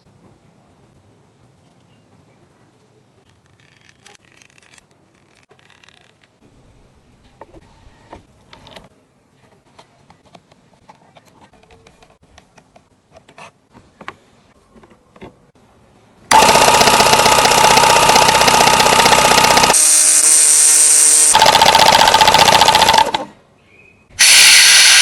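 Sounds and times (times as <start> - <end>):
machine motor buzzing rattle: 16.3 - 23.3, 24.2 - 25.0.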